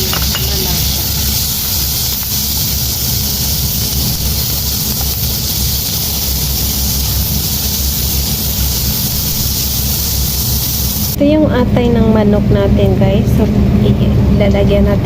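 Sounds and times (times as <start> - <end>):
onion sizzling in oil: 0.0 - 11.2
low continuous hum: 0.0 - 15.0.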